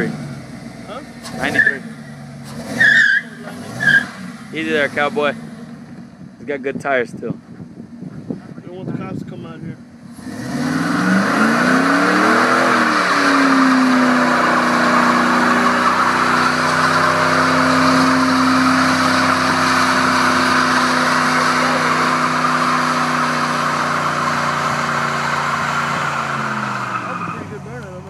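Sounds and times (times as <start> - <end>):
engine revving high: 0.0 - 5.7, 10.1 - 27.9
tyres squealing: 1.2 - 5.0, 10.8 - 27.6.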